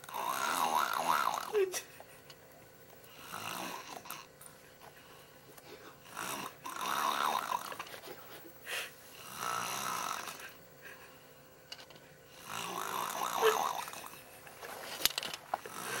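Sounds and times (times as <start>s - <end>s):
fake snoring with flapping lips: 0.0s - 1.6s, 3.0s - 4.3s, 6.0s - 8.0s, 9.1s - 10.6s, 12.3s - 14.3s, 15.5s - 16.0s.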